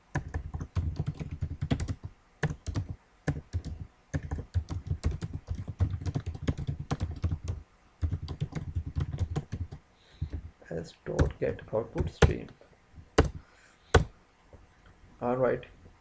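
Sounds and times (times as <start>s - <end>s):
typing on computer keyboard: 0.1s - 10.5s, 11.2s - 12.5s, 13.2s - 13.4s.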